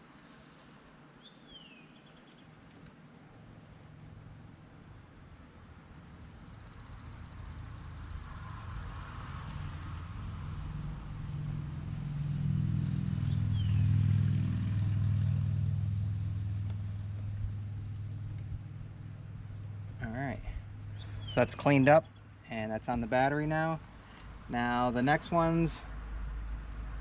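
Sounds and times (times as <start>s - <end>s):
vehicle engine passing by: 5.9s - 21.8s.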